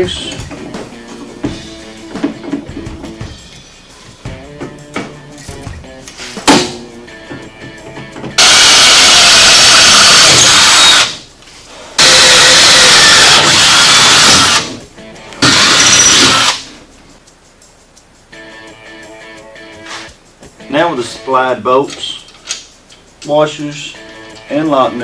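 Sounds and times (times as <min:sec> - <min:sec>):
faint background music: 0:00.0 - 0:09.6, 0:14.4 - 0:25.0
power drill running: 0:08.4 - 0:11.2, 0:12.0 - 0:14.8, 0:15.4 - 0:16.7.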